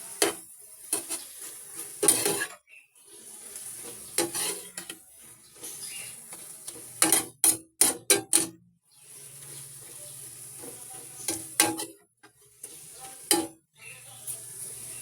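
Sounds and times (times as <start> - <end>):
food sizzling in a frying pan: 0.0 - 15.0
utensil clattering against pan: 0.1 - 2.6, 3.5 - 5.0, 5.6 - 8.6, 9.4 - 12.0, 12.6 - 13.6.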